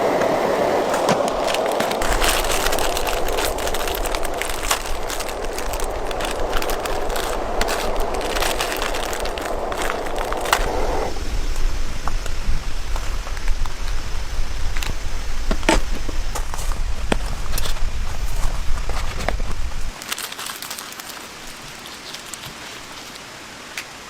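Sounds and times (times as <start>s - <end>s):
steady hiss: 0.0s - 24.0s
raindrops ticking: 0.9s - 10.6s.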